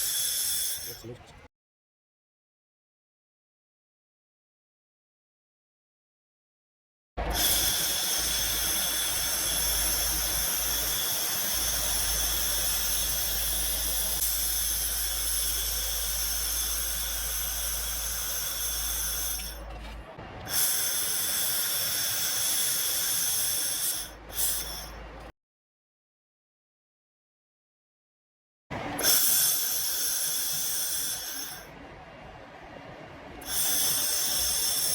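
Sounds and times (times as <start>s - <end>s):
laser welder hiss: 0.0s - 1.1s, 7.2s - 19.6s, 20.5s - 25.0s, 29.0s - 31.7s, 33.4s - 34.9s
low machine hum: 7.2s - 25.3s, 28.7s - 34.9s.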